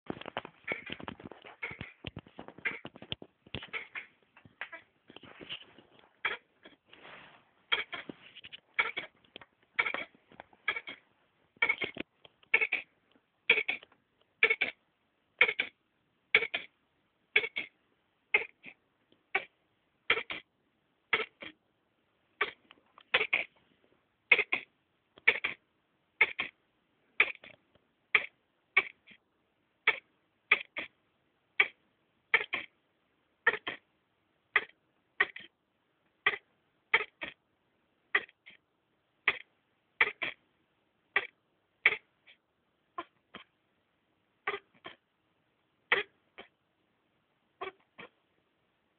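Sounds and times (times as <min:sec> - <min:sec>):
hedgehog coughing: 0:00.7 - 0:01.0, 0:01.6 - 0:02.0, 0:02.6 - 0:03.0, 0:03.6 - 0:04.8, 0:06.2 - 0:06.8, 0:07.7 - 0:08.1, 0:08.8 - 0:09.2, 0:09.8 - 0:11.0, 0:11.6 - 0:12.9, 0:13.5 - 0:13.8, 0:14.4 - 0:14.8, 0:15.4 - 0:16.7, 0:17.4 - 0:20.5, 0:21.1 - 0:21.6, 0:22.4 - 0:23.5, 0:24.3 - 0:25.6, 0:26.2 - 0:26.6, 0:27.2 - 0:29.2, 0:29.8 - 0:30.9, 0:31.6 - 0:32.7, 0:33.4 - 0:33.8, 0:34.5 - 0:35.5, 0:36.2 - 0:37.4, 0:38.1 - 0:38.6, 0:39.3 - 0:40.4, 0:41.2 - 0:42.1, 0:44.5 - 0:45.0, 0:45.9 - 0:46.5.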